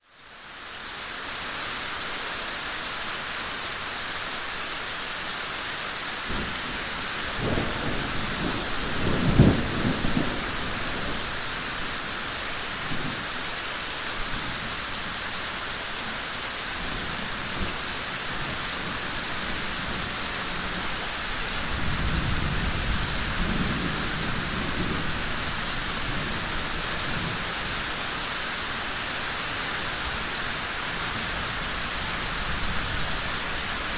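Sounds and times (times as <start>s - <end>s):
heavy rain: 0.0s - 33.9s
rolling thunder: 6.3s - 13.3s, 21.6s - 27.5s.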